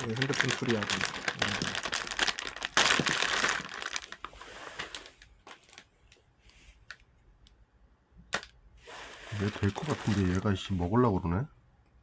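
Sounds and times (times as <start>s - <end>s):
plastic packaging crinkling: 0.0s - 6.2s, 9.3s - 10.6s.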